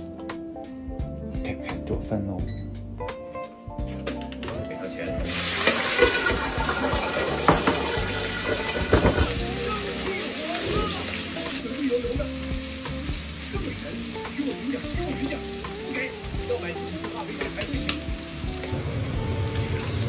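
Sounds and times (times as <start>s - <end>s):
shrimp sizzling in oil: 5.2s - 20.0s
spatula scraping and tapping pan: 5.6s - 9.4s.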